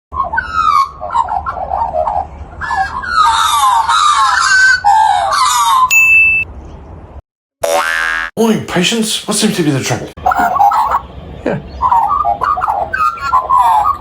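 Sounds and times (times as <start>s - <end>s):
magpie calling: 0.2s - 5.9s, 10.2s - 11.1s, 11.7s - 14.0s
steady high tone: 5.9s - 6.4s.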